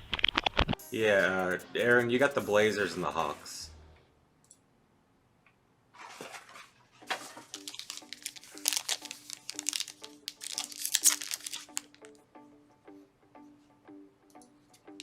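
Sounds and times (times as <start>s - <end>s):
plastic wrapping crinkling and tearing: 6.0s - 12.1s.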